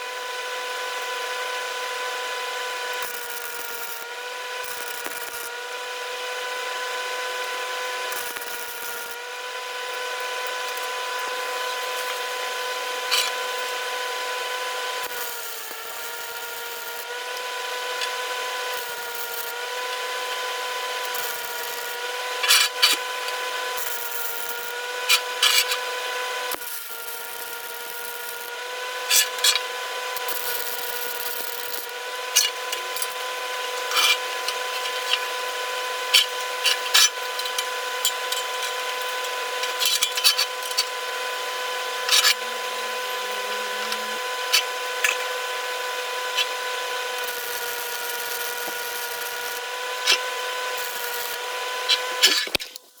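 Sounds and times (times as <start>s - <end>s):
power tool high whine: 0.0s - 53.0s
sharp clicks and scrapes: 25.1s - 25.9s, 31.2s - 41.0s, 42.0s - 42.5s, 51.9s - 52.9s.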